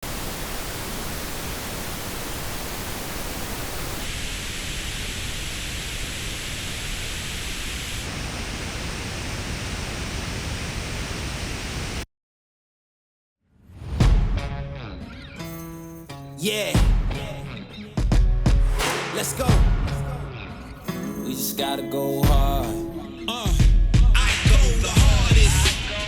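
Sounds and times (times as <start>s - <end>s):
pink noise hiss: 0.0s - 12.0s.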